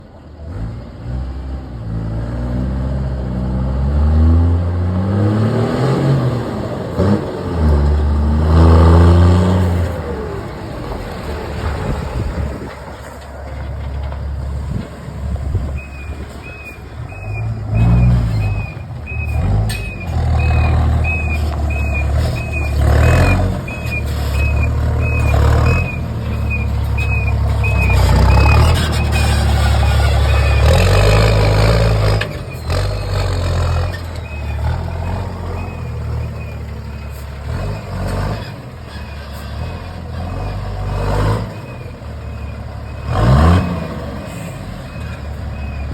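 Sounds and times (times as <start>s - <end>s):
truck diesel engine revving: 0.3s - 45.9s
reversing alarm beeping: 15.6s - 33.3s.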